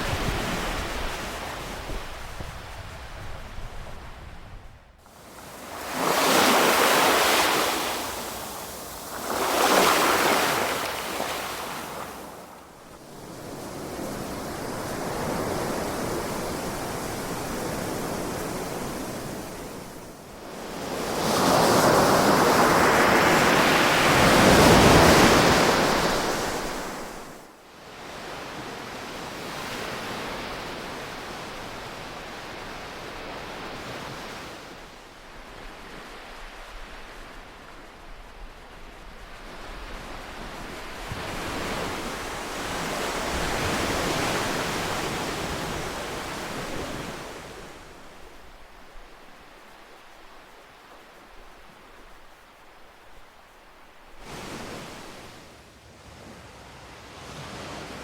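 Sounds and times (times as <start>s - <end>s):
ocean waves breaking: 5.0s - 20.0s.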